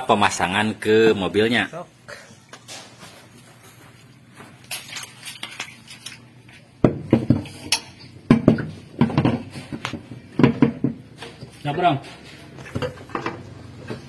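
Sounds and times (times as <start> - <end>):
metal tools clinking and clanking: 4.6 - 6.3, 7.3 - 8.2.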